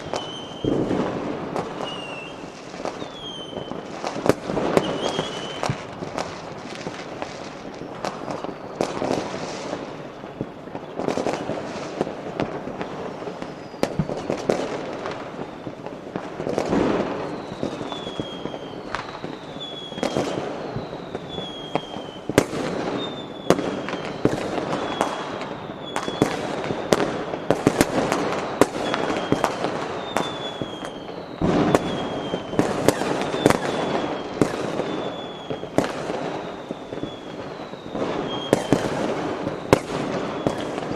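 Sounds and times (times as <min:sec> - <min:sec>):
firecrackers banging and crackling: 0:00.0 - 0:40.9
fireworks whistling: 0:00.0 - 0:40.9.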